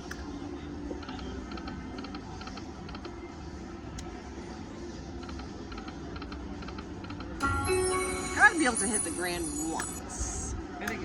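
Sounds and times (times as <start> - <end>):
casino background noise: 0.0 - 11.0
slot machine electronic ticks: 7.4 - 10.5.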